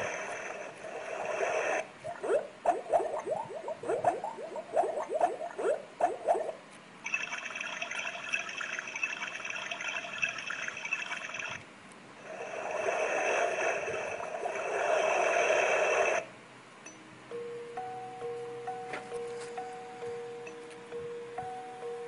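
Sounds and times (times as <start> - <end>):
trickling water from small speaker: 7.1 - 11.6.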